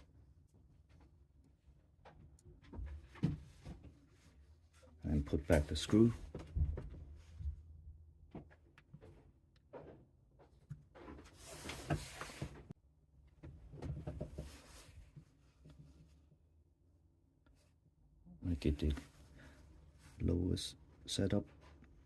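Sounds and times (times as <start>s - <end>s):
rustling and scraping: 8.4s - 12.8s, 13.4s - 16.3s.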